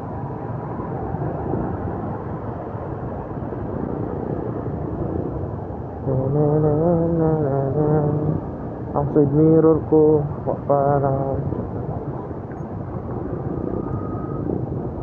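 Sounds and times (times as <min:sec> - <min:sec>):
motorcycle engine and road rumble: 0:00.0 - 0:15.0
person speaking: 0:09.0 - 0:12.3.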